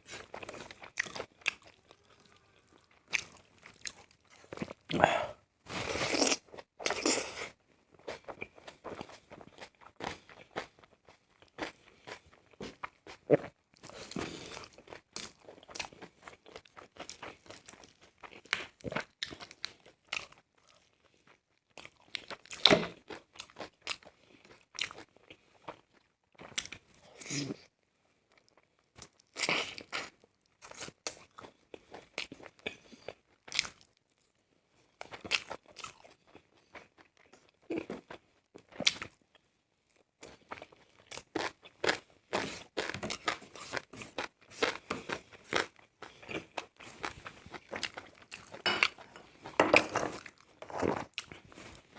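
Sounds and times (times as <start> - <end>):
person chewing and biting: 0.0 - 5.1, 5.8 - 20.9, 35.0 - 39.2, 40.2 - 51.9.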